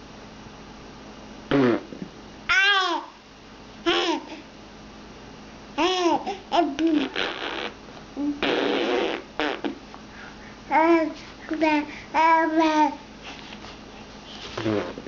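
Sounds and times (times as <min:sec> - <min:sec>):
baby babbling: 0:02.5 - 0:03.1, 0:03.8 - 0:04.4, 0:05.8 - 0:07.2, 0:10.7 - 0:13.0.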